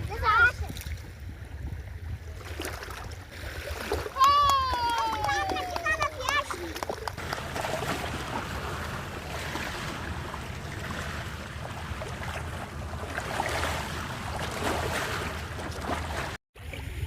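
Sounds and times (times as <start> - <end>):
wind rumbling on microphone: 0.0 - 17.0
sea surf washing: 3.6 - 16.4.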